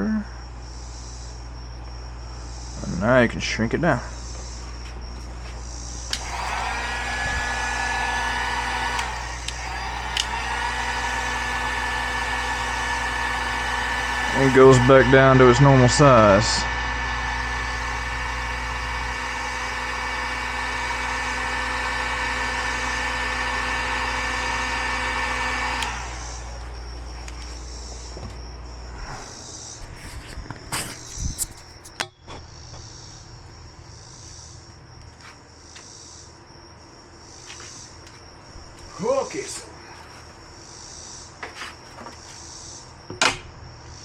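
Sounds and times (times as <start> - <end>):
crickets chirping: 0.0 - 6.2, 26.1 - 44.0
heat gun whirring: 6.0 - 28.3, 30.2 - 32.1.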